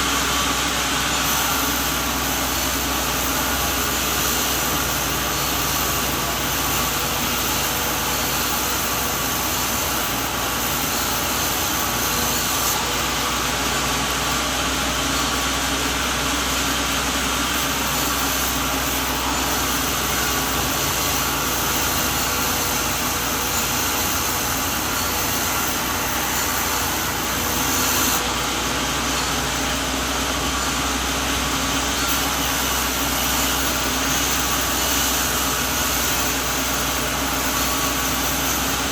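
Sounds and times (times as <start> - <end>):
sawmill machinery droning: 0.0 - 38.9.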